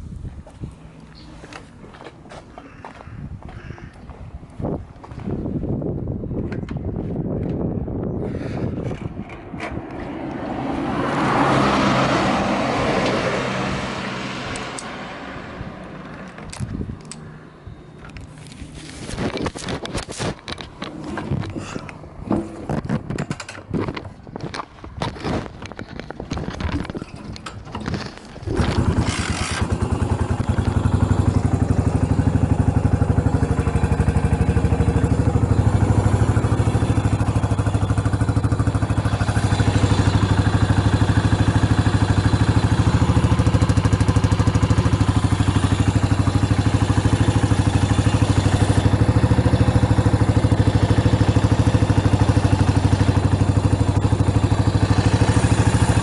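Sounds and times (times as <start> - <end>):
motorcycle engine idling: 28.8 - 56.0.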